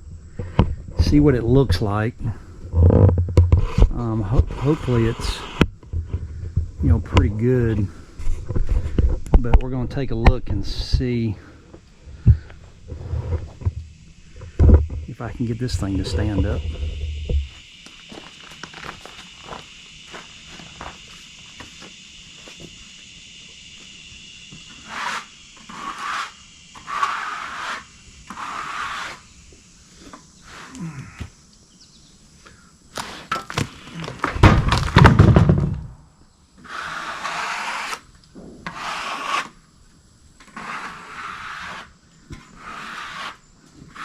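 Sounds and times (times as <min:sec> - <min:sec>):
wood scraping on wood: 0:01.0 - 0:11.4, 0:12.2 - 0:19.6, 0:24.7 - 0:29.3, 0:36.6 - 0:39.6, 0:40.4 - 0:44.0
heavy wooden thud: 0:34.3 - 0:36.0.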